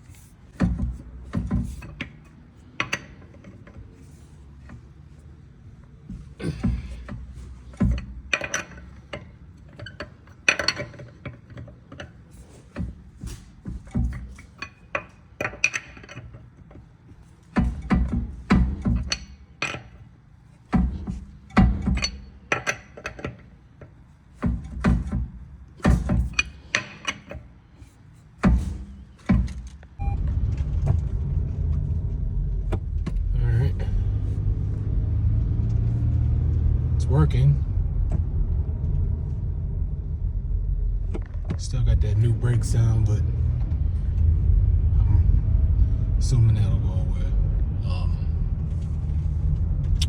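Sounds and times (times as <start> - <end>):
car engine starting and running: 30.0 - 50.0.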